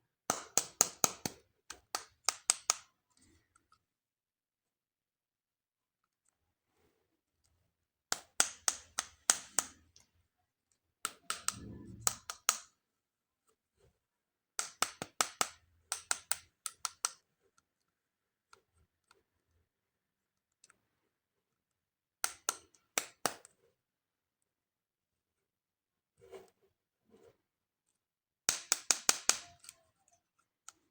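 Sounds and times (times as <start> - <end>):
short low rumble: 11.5 - 12.2.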